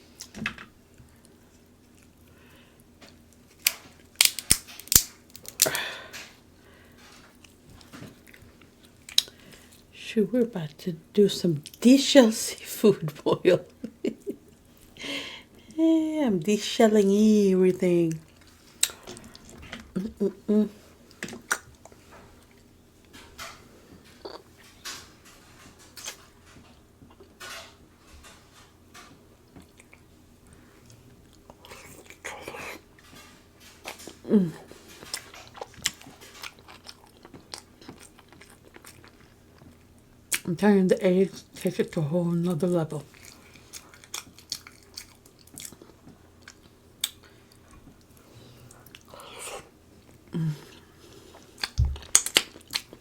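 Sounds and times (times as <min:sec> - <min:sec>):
crab shells cracking: 0:03.4 - 0:05.8, 0:43.1 - 0:45.8, 0:51.6 - 0:53.0
crunching crackle: 0:43.1 - 0:47.2.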